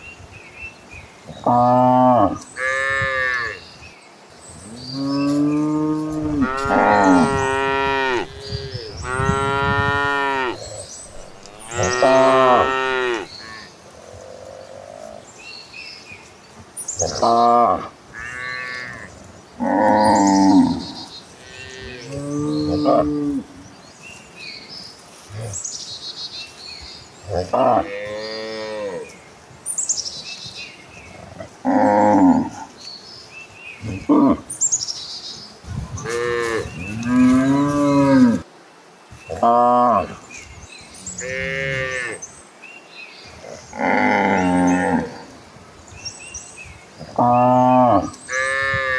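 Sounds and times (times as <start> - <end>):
cattle mooing: 5.3 - 13.7.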